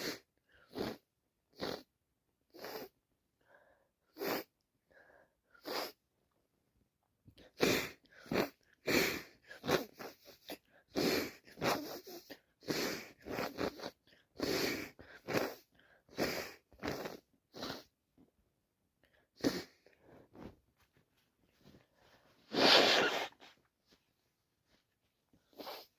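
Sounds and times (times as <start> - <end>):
woman sneezing and sniffing: 0.0 - 1.0, 4.1 - 4.5, 5.6 - 6.0, 7.5 - 17.9, 19.3 - 20.5, 22.1 - 23.6, 25.4 - 25.9.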